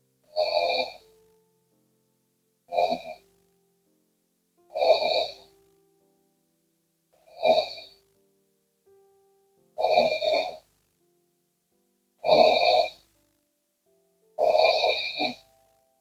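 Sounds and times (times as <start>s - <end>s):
woman snoring: 0.4s - 1.0s, 2.7s - 3.2s, 4.8s - 5.5s, 7.3s - 8.0s, 9.8s - 10.6s, 12.2s - 13.0s, 14.4s - 15.4s.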